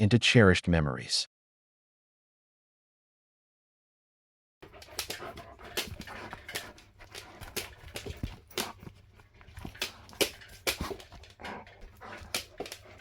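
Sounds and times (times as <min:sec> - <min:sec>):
sharp clicks and taps: 0:04.6 - 0:13.0.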